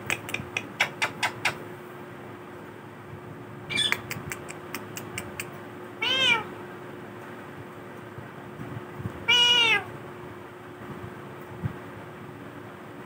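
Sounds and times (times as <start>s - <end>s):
parrot squawk: 3.7s - 4.0s
parrot meow-like calls: 6.0s - 6.5s, 9.3s - 9.9s.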